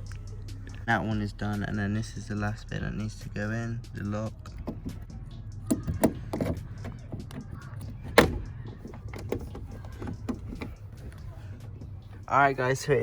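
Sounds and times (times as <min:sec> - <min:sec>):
car door lock clicks: 0:04.5 - 0:11.3.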